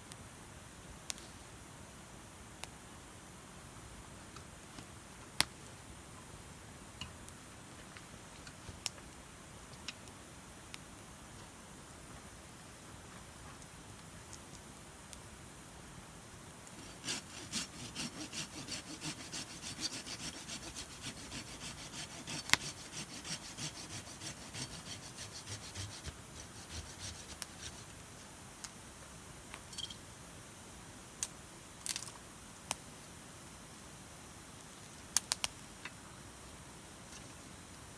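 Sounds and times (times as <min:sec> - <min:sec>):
hand saw cutting wood: 0:16.8 - 0:28.1.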